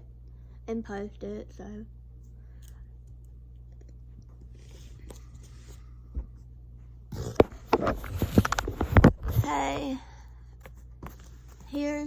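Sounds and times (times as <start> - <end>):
low hum: 0.0 - 11.7
clicks and rustles of handling: 7.3 - 9.5.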